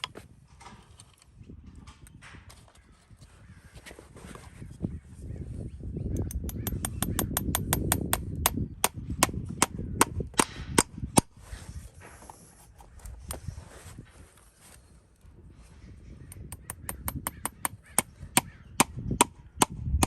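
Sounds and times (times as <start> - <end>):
hammer tapping: 6.3 - 9.7.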